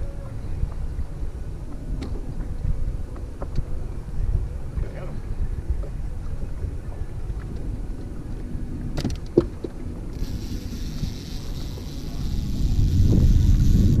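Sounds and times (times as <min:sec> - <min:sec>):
wind rumbling on microphone: 0:00.0 - 0:14.0
high hiss: 0:10.2 - 0:14.0.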